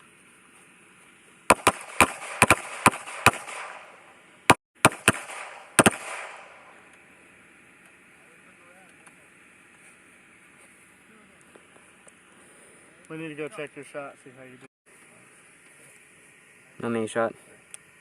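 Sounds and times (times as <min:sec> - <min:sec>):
handgun shots with echo: 0:01.5 - 0:04.0, 0:04.8 - 0:06.7.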